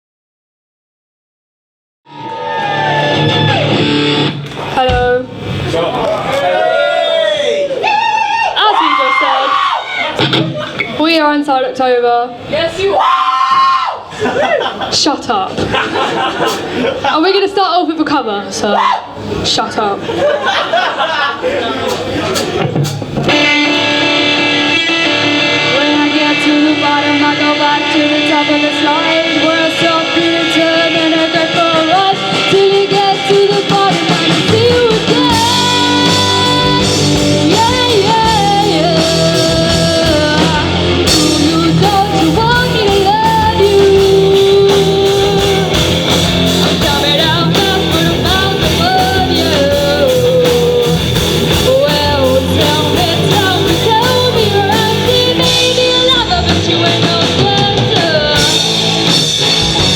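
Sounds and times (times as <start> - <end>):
drums: 2.1 - 11.2, 12.4 - 17.6, 18.5 - 59.9
guitar: 2.1 - 13.8, 21.9 - 59.9
person singing: 25.2 - 58.7.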